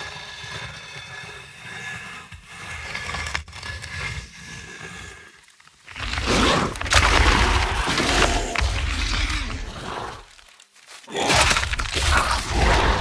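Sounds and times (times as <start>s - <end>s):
scraping crackling textures: 2.8s - 13.0s.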